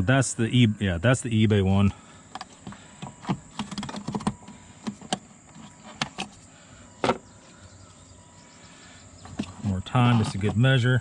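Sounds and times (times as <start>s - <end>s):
plastic clicks and knocks: 2.3s - 6.3s.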